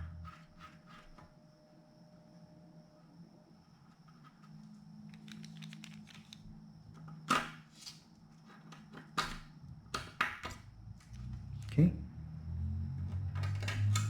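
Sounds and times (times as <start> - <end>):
small clicks of laptop parts: 5.0 - 11.7, 13.1 - 14.0.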